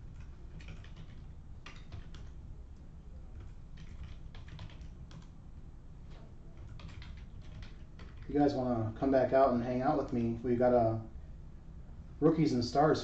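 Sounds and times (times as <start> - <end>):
keyboard typing clicks: 0.0 - 2.4, 3.3 - 5.3, 6.1 - 8.3
low steady hum: 0.0 - 13.0.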